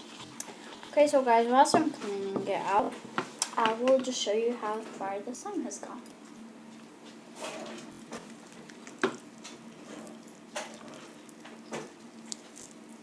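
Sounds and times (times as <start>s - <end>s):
faint steady hum: 0.0s - 13.0s
container knocks and scrapes: 7.3s - 8.3s.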